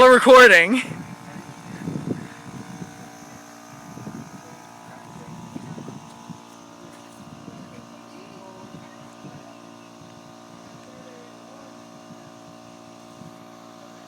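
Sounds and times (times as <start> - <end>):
faint voices: 0.0 - 2.6
steady machine hum: 0.0 - 6.0.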